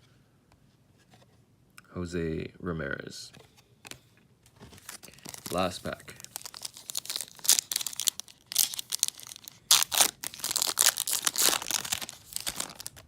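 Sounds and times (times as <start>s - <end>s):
foil wrapper tearing and crinkling: 4.8s - 13.0s.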